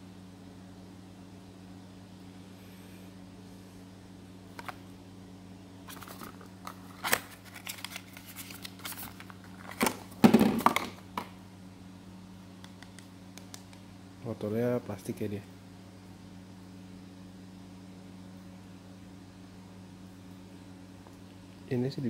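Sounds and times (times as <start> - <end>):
steady low hum: 0.0 - 22.0
packaging crinkling and tearing: 5.9 - 10.9.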